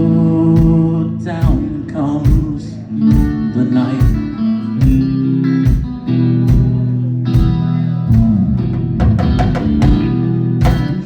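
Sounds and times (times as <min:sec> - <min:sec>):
bass line: 0:00.0 - 0:11.0
live rock band playing: 0:00.0 - 0:11.0
strummed guitar chords: 0:00.0 - 0:11.0
drum and cymbal hits: 0:07.4 - 0:11.0.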